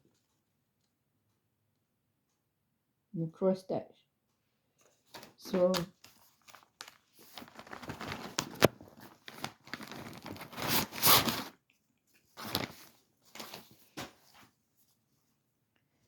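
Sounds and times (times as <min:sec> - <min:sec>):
fabric crinkling and rustling: 0:04.8 - 0:14.9.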